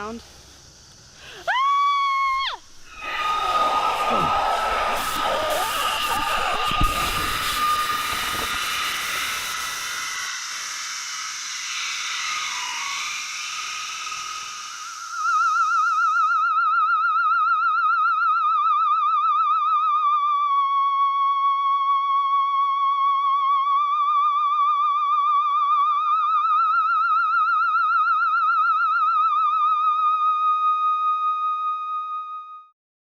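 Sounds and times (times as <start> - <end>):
eerie wobbling electronic tone: 2.7 - 17.8.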